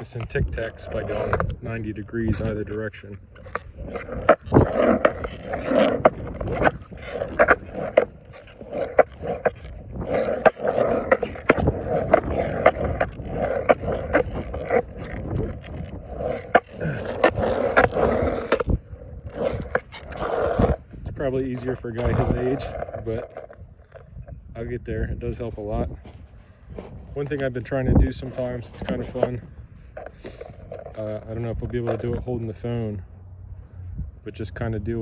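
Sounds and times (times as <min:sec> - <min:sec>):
skateboard clacks on ground: 0:00.0 - 0:20.8, 0:21.4 - 0:24.4, 0:25.6 - 0:32.3
skateboard wheels rolling: 0:00.0 - 0:32.7.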